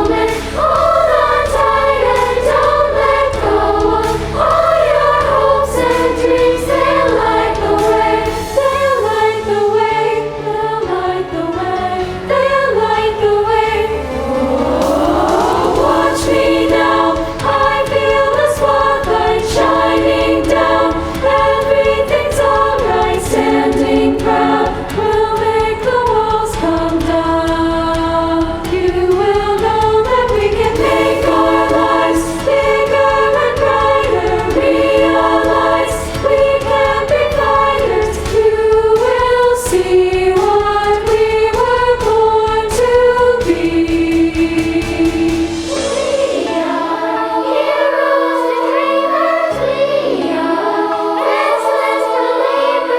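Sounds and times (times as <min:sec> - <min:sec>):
accompaniment with steady beat: 0:00.0 - 0:10.0, 0:13.6 - 0:48.5
girls' choir singing in harmony: 0:00.0 - 0:52.9.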